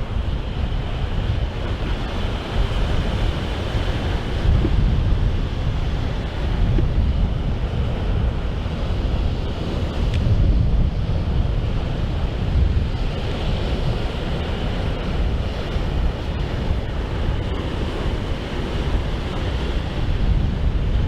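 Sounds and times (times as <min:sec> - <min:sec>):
rush of wind and sea: 0:00.0 - 0:21.0
wind buffeting microphone: 0:00.0 - 0:21.0.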